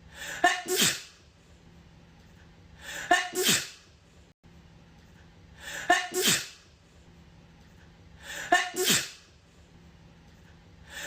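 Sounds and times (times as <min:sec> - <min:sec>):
woman sneezing: 0:00.2 - 0:01.2, 0:02.9 - 0:03.8, 0:05.7 - 0:06.6, 0:08.3 - 0:09.3.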